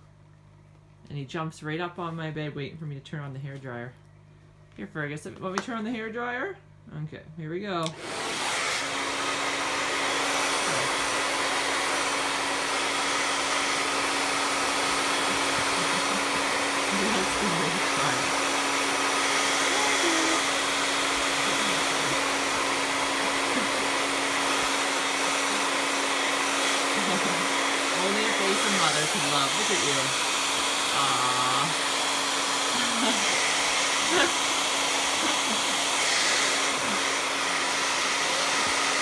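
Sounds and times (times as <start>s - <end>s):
hair dryer blowing air: 7.8s - 39.0s.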